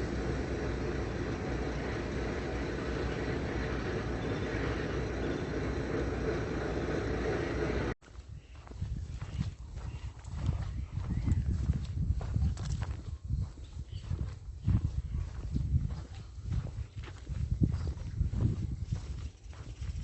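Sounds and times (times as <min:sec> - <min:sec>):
car road and engine noise: 0:00.0 - 0:08.0
outdoor ambience: 0:00.0 - 0:20.0.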